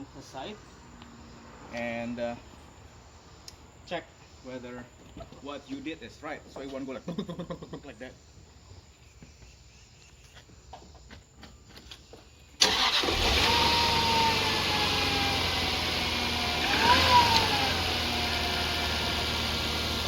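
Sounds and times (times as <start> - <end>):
car engine starting and idling: 12.6 - 20.0
supercharger whine: 12.6 - 20.0.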